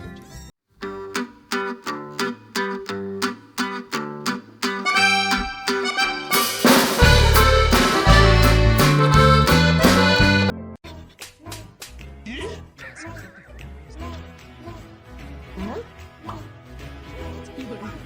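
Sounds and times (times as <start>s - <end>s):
upbeat plucked-string music: 0.8s - 10.6s
band with heavy bass: 5.0s - 10.5s.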